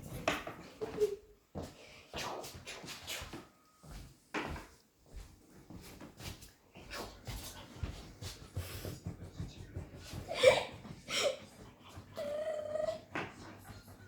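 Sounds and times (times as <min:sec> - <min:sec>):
dog whining: 0:12.2 - 0:13.2.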